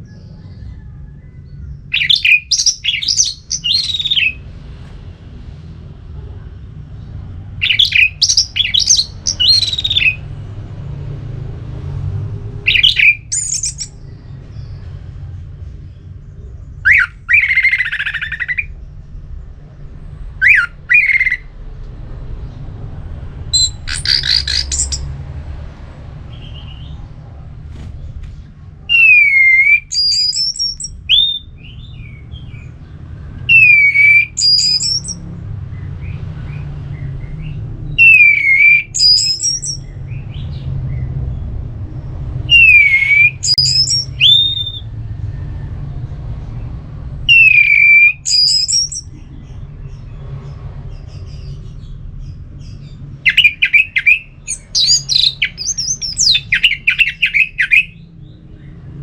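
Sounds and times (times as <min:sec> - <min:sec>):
steady low hum: 0:00.0 - 0:59.0
thrush singing: 0:01.8 - 0:04.5, 0:06.2 - 0:44.9, 0:46.6 - 0:49.2, 0:52.7 - 0:58.1.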